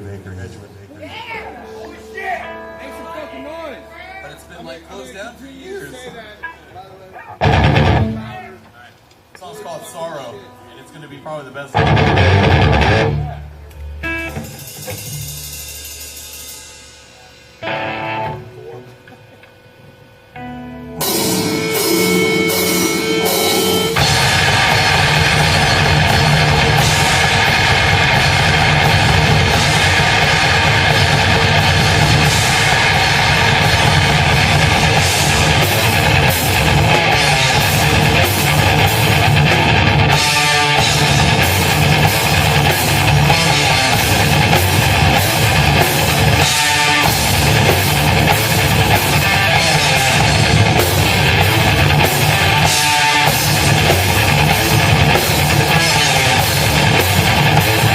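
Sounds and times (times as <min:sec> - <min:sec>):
heavy metal band playing live: 0:07.4 - 0:08.3, 0:11.8 - 0:18.5, 0:20.9 - 0:57.9.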